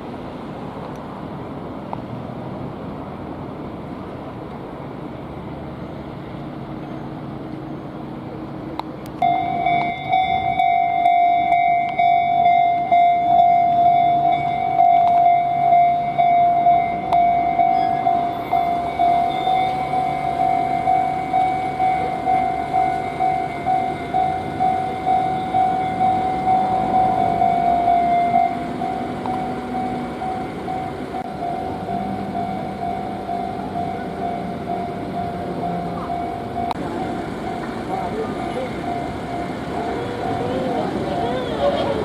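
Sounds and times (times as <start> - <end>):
train rumble: 0.0 - 42.0
level-crossing warning bell: 9.2 - 42.0.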